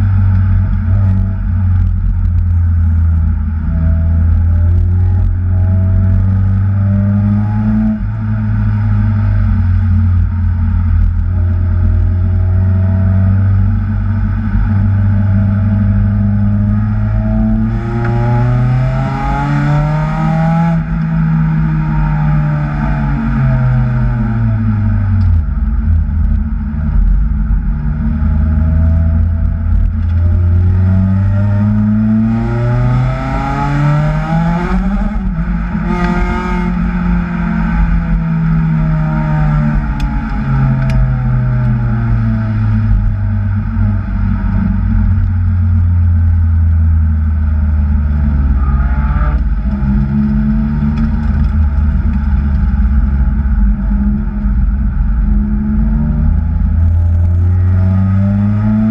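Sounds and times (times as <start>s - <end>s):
car engine revving under load: 0.0s - 58.9s.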